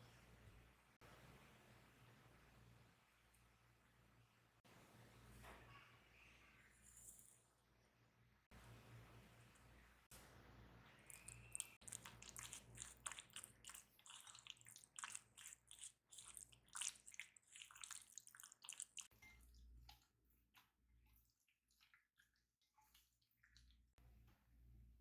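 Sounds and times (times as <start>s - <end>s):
wet squishing of food by hand: 10.1s - 24.0s.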